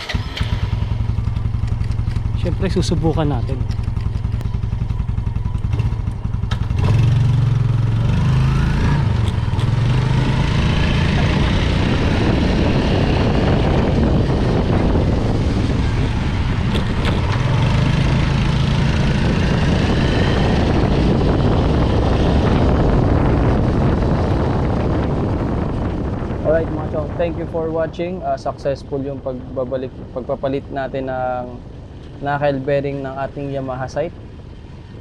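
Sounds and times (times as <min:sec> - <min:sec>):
motorcycle engine revving: 0:00.0 - 0:28.0
steady rushing noise: 0:00.6 - 0:35.0.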